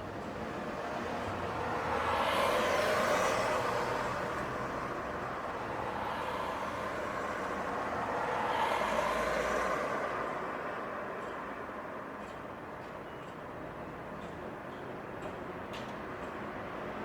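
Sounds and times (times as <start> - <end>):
passing traffic: 0.0 - 12.7.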